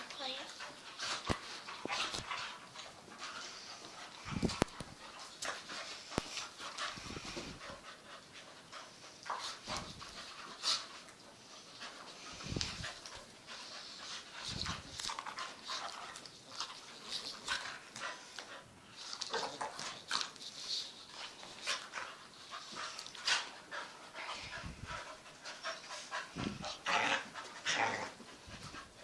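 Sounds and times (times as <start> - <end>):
dogs panting: 0.0 - 29.0.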